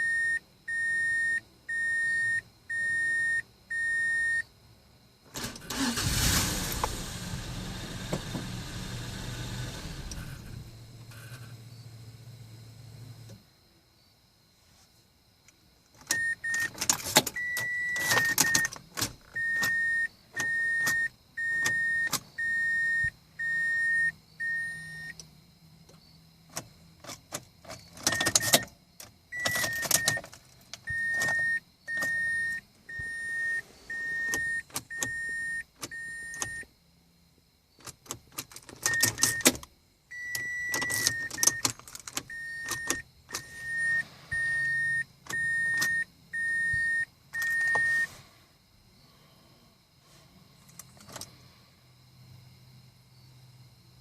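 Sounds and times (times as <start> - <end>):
car warning chime beeping: 0.0 - 4.5, 5.4 - 6.9, 16.1 - 25.3, 27.8 - 28.7, 29.3 - 36.8, 38.8 - 48.2
keys rattling in ignition: 5.3 - 11.5, 16.0 - 22.3, 26.5 - 32.4, 33.9 - 36.6, 37.8 - 39.7, 40.3 - 43.7, 45.2 - 46.5, 47.4 - 48.0, 50.6 - 51.4.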